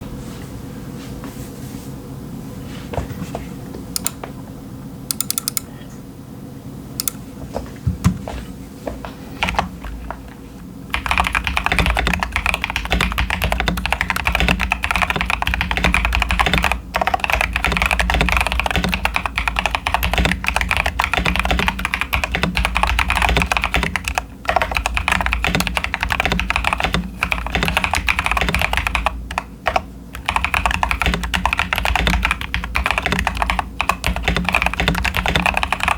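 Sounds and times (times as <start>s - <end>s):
mechanical keyboard typing: 4.0s - 4.2s, 5.1s - 5.7s, 10.9s - 35.9s.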